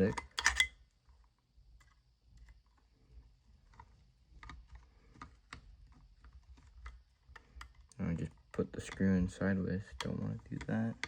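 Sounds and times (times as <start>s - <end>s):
screwdriver clicking on metal: 0.0s - 0.7s.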